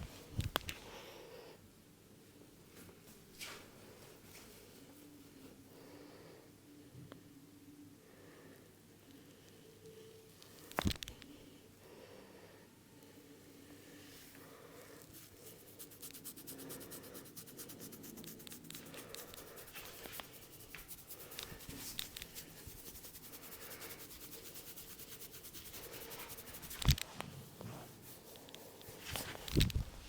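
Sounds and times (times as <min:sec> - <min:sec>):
hands scratching through hair: 0:15.1 - 0:27.2, 0:27.9 - 0:30.0.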